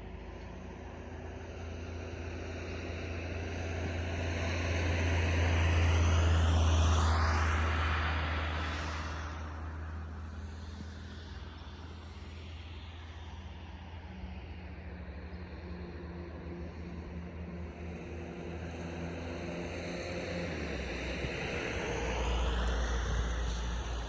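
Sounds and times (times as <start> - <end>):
vehicle passing by: 3.4 - 11.9, 18.0 - 24.0.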